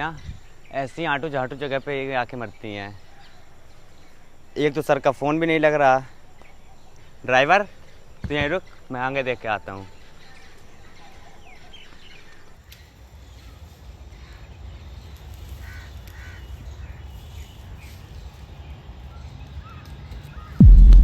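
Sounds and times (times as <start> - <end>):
crow cawing: 15.6 - 16.5
low steady rumble: 20.6 - 21.0.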